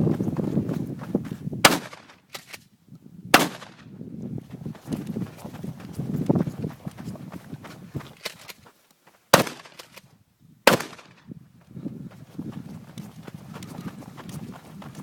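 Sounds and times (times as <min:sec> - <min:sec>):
footsteps: 0:00.0 - 0:02.6, 0:04.4 - 0:10.1, 0:11.0 - 0:15.0
gunshots: 0:01.6 - 0:02.5, 0:03.4 - 0:03.8, 0:09.4 - 0:09.9, 0:10.7 - 0:11.2.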